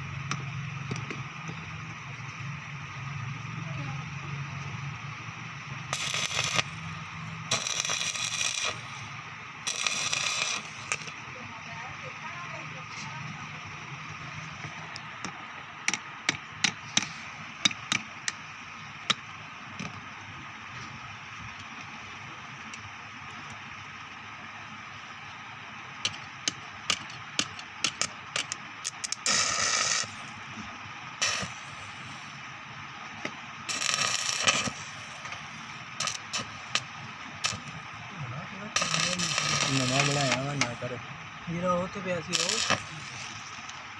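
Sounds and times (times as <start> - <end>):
low machine hum: 0.0 - 43.9
steady background hiss: 0.0 - 43.9
welding arc crackling: 5.2 - 20.0, 25.9 - 43.9
electrode striking snaps: 5.9 - 6.7.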